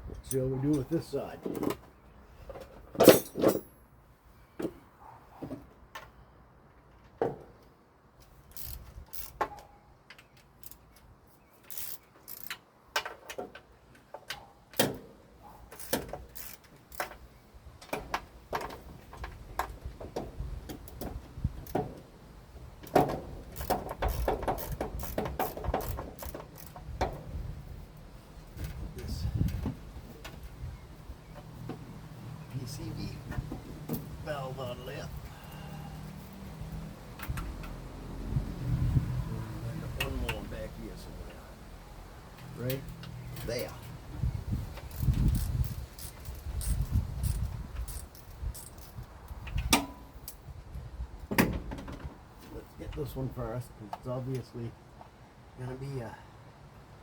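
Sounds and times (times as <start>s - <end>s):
socket wrench clicking on bolts: 8.5s - 9.4s, 11.6s - 13.2s, 15.7s - 17.2s, 22.8s - 27.2s, 44.8s - 50.4s.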